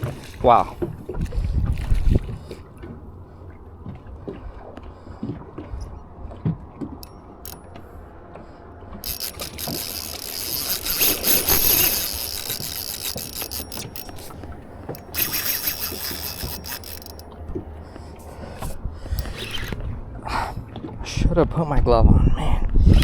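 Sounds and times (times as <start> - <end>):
fishing reel drag buzzing: 7.0 - 7.9, 9.0 - 20.0.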